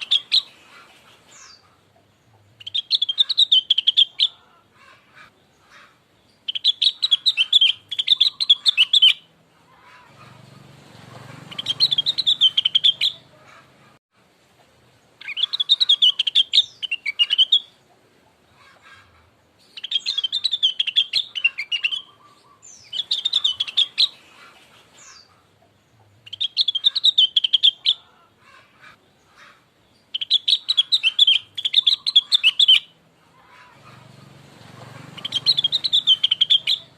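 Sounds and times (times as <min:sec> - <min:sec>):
bird singing high chattering notes: 0:06.3 - 0:09.3, 0:11.5 - 0:13.3, 0:19.6 - 0:24.2, 0:30.0 - 0:33.0, 0:35.2 - 0:36.9.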